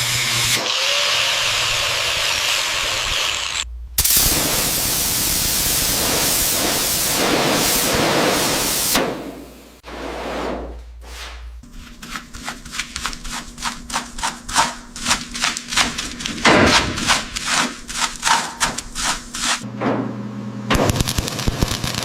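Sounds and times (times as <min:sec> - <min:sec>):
faint steady hum: 0:03.7 - 0:04.0
rubbing or scraping strokes: 0:09.8 - 0:19.7.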